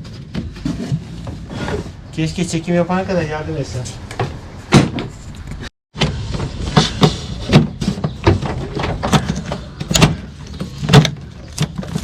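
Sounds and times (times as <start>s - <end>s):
irregular knocks and clunks: 6.0s - 12.0s.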